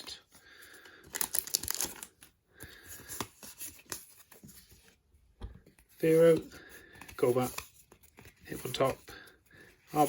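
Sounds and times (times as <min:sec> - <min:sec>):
trading cards being handled: 0:00.7 - 0:10.0
foil wrapper rustling: 0:01.2 - 0:02.2.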